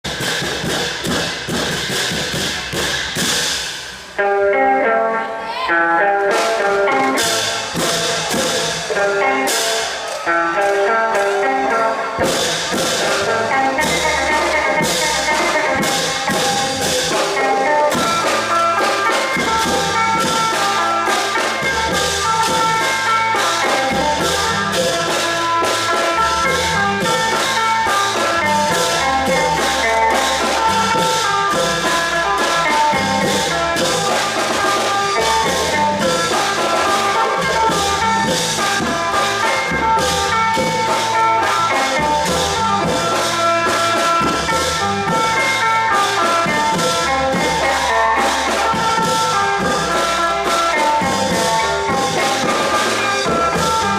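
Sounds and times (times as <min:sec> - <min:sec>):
fast drumming: 0:00.0 - 0:04.0, 0:06.3 - 0:11.5, 0:12.1 - 0:53.9.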